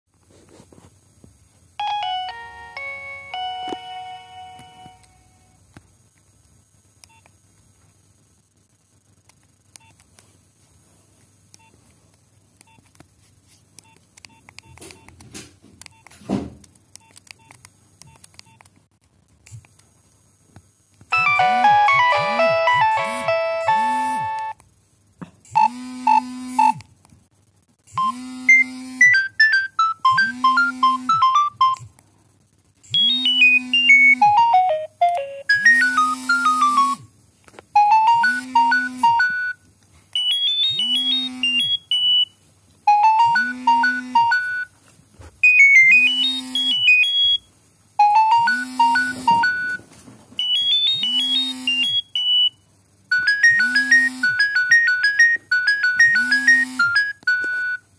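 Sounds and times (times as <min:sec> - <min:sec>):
polyphonic ringtone melodies: 0:01.8 - 0:05.1, 0:21.1 - 0:24.6, 0:33.0 - 0:37.0, 0:37.8 - 0:39.6, 0:40.2 - 0:42.3, 0:42.9 - 0:44.7, 0:48.0 - 0:49.8, 0:50.4 - 0:52.5, 0:53.1 - 0:57.8.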